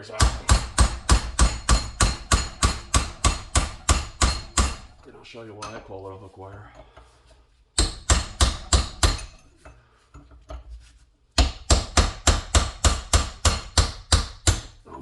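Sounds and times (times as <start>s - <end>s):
hammer striking chisel: 0.0s - 5.0s, 7.8s - 9.5s, 11.4s - 14.8s.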